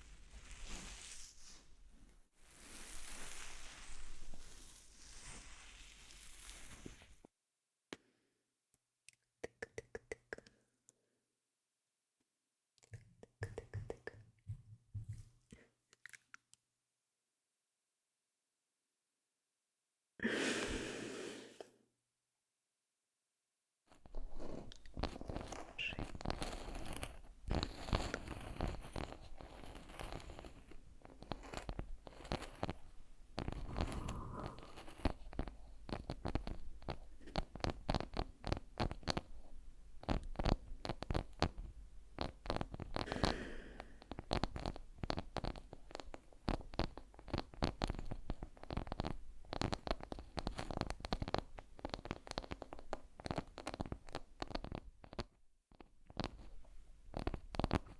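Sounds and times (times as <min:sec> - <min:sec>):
crackles and clicks: 0:00.0 - 0:07.3, 0:23.9 - 0:57.9.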